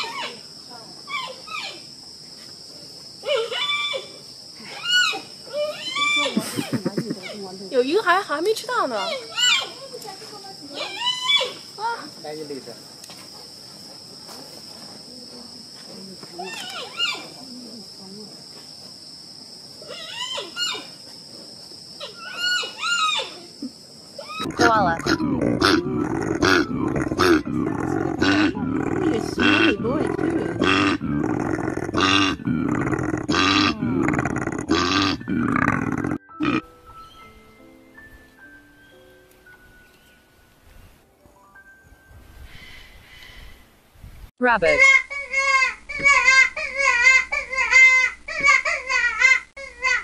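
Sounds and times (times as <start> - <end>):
high insect-like whine: 0.0 - 37.1.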